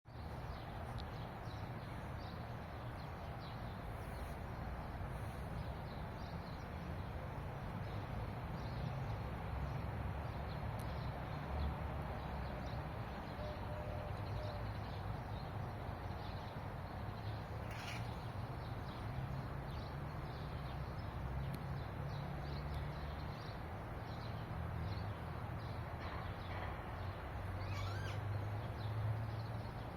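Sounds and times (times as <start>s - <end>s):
outdoor background hum: 0.1s - 29.9s
faint bird chirps: 17.4s - 18.4s, 27.6s - 28.6s.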